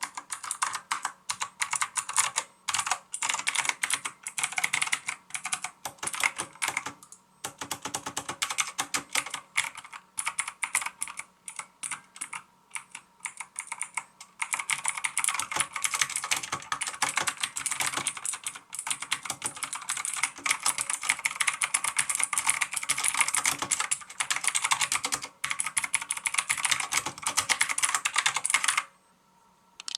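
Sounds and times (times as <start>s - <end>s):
mechanical keyboard typing: 0.0s - 28.9s.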